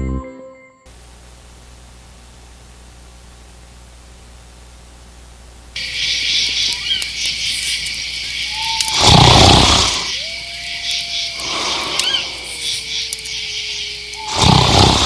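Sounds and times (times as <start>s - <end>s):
faint low hum: 0.9s - 15.0s
steady high hiss: 0.9s - 15.0s
bird chirps: 5.8s - 14.8s.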